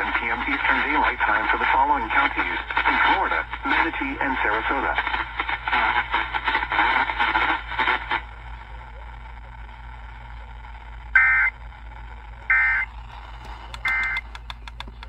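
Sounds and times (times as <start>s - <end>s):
synthesized announcer voice: 0.0s - 5.0s
radio static hiss: 0.0s - 15.0s.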